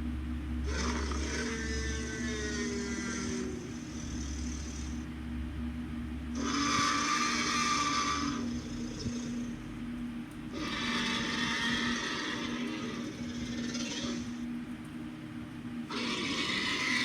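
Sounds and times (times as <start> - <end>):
low hum: 0.0 - 17.0
dinosaur roar: 0.6 - 5.1, 6.4 - 9.7, 10.5 - 14.5, 15.9 - 17.0.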